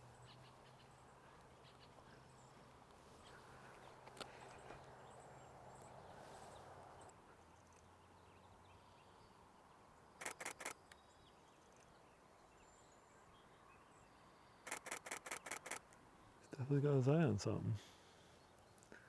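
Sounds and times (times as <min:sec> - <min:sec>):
camera shutter clicks: 0:10.2 - 0:11.0, 0:14.7 - 0:16.0.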